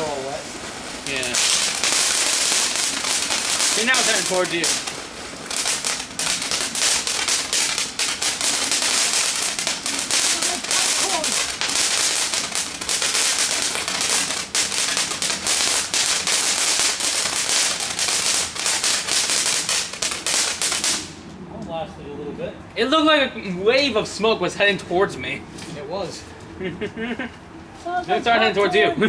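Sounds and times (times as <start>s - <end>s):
fireworks crackling pops: 0.0s - 21.4s.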